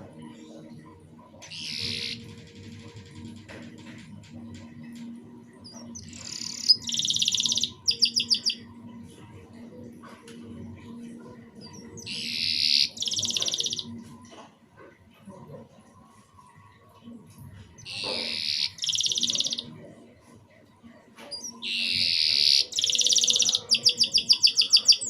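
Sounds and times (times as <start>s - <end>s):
canary singing: 0.8s - 3.4s, 5.4s - 8.9s, 11.5s - 14.0s, 17.8s - 19.9s, 21.3s - 25.0s.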